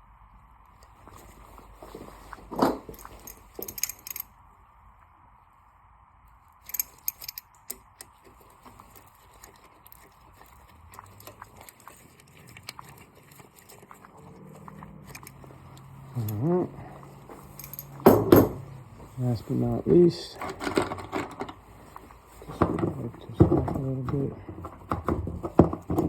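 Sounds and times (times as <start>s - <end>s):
metal tools clinking: 2.6s - 4.3s, 6.6s - 7.8s, 15.1s - 15.4s, 16.1s - 18.8s.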